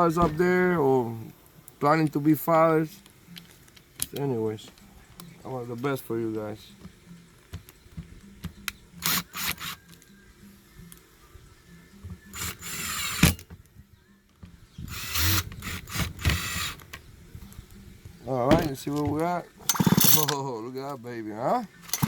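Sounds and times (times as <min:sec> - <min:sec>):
chainsaw mechanical clicks: 0:08.5 - 0:10.1, 0:18.6 - 0:20.4, 0:21.7 - 0:22.0
chainsaw mechanical rasps: 0:09.0 - 0:10.0, 0:12.3 - 0:13.4, 0:14.9 - 0:16.9, 0:18.6 - 0:20.5, 0:21.7 - 0:22.0.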